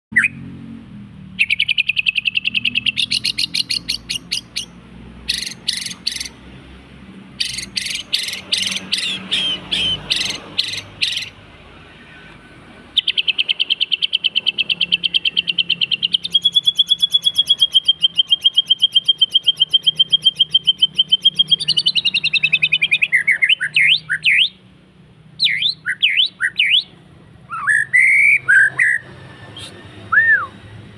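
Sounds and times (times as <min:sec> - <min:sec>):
bird song trills: 0:00.1 - 0:00.5, 0:01.3 - 0:06.4, 0:07.3 - 0:11.4, 0:12.9 - 0:24.7, 0:25.4 - 0:30.6
bird whistled notes: 0:01.4 - 0:04.7, 0:05.3 - 0:06.4, 0:07.4 - 0:11.4, 0:13.0 - 0:24.6, 0:25.4 - 0:26.9, 0:27.5 - 0:29.0, 0:29.6 - 0:30.6.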